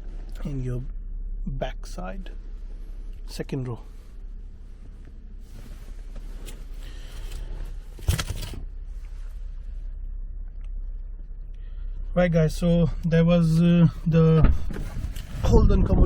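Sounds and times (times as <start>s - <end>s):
low steady rumble: 0.0s - 16.0s
rustling: 3.8s - 10.0s.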